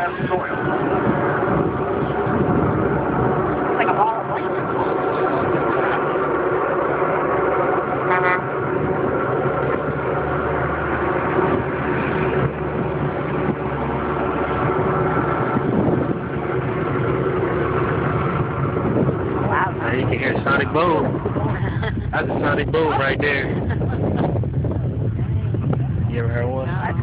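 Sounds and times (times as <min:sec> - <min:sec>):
road traffic noise: 0:00.0 - 0:27.0
car horn toot: 0:08.1 - 0:08.6.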